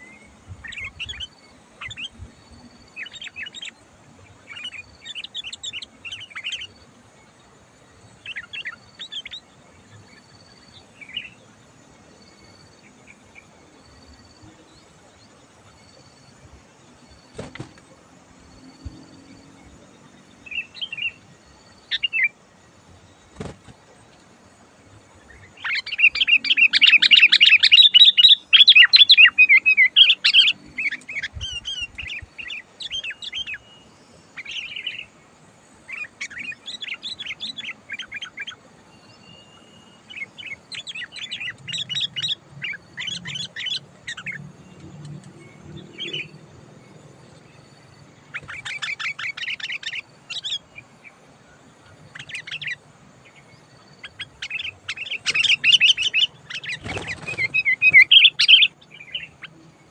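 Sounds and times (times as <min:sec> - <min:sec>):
bird chattering calls: 0:54.0 - 0:59.5.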